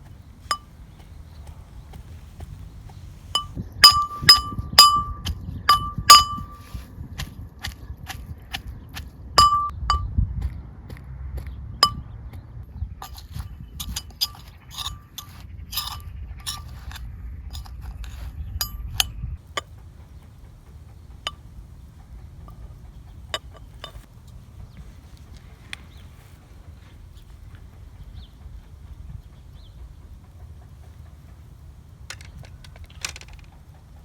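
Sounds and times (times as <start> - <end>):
low rumble: 0.0 - 6.3, 9.2 - 13.8
utensils clinking against dishes: 3.4 - 6.8, 13.0 - 18.8.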